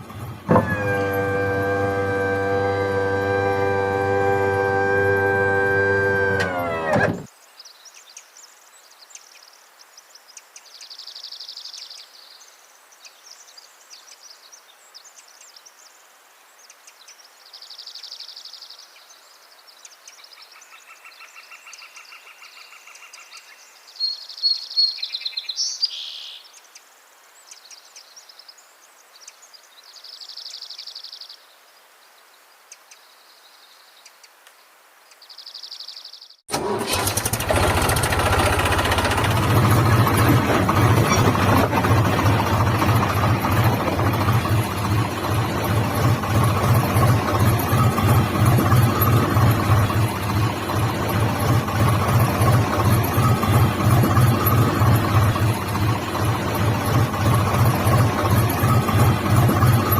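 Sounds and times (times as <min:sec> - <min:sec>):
birds chirping: 0:38.8 - 0:59.9.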